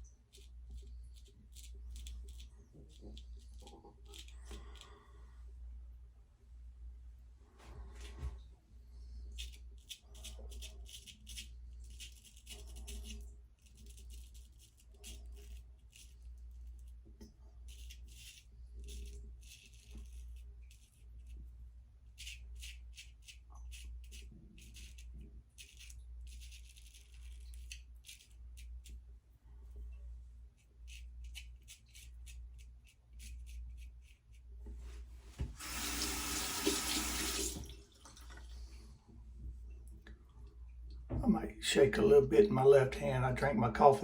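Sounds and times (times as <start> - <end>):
steady low hum: 23.4 - 44.0.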